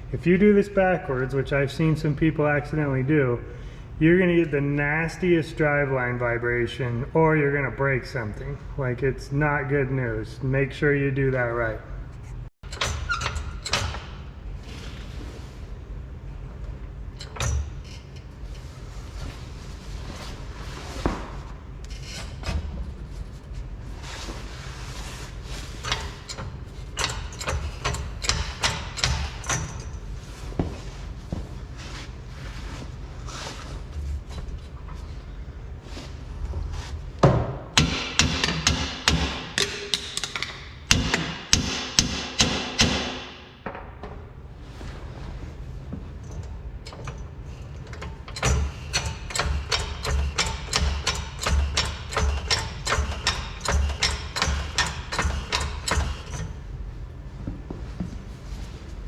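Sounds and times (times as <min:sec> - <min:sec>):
steady low hum: 0:00.0 - 0:59.0
metal clanks of tools and parts: 0:12.6 - 0:14.3, 0:17.1 - 0:18.8, 0:25.5 - 0:30.8, 0:46.1 - 0:56.6
hammer striking steel: 0:37.8 - 0:43.5.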